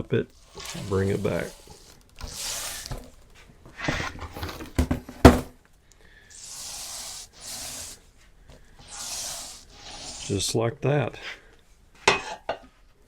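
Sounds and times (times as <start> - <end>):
wax roller rubbing on plastic sheet: 0.0 - 4.7, 6.3 - 10.6.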